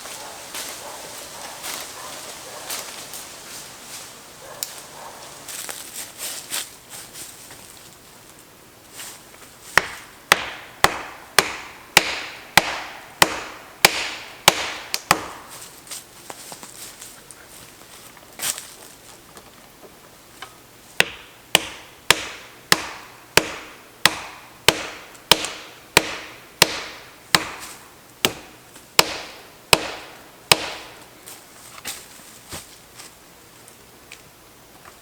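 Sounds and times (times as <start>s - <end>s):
hammer blows on wood: 9.8s - 15.5s, 21.0s - 31.0s.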